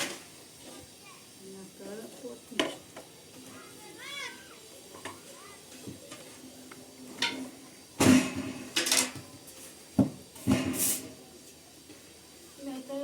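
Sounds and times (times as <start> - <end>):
cookware clattering and scraping: 7.1 - 9.4.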